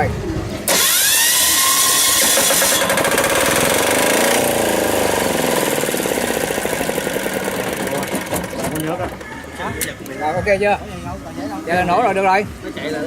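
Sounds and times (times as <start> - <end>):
diesel generator engine starting: 0.0 - 9.3.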